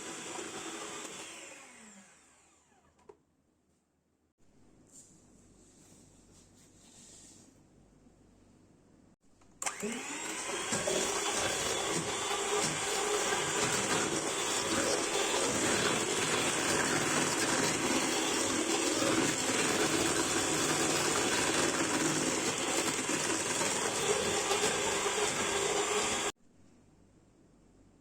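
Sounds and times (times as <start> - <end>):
kitchen appliance motor whirring: 0.0 - 3.0, 9.6 - 26.4.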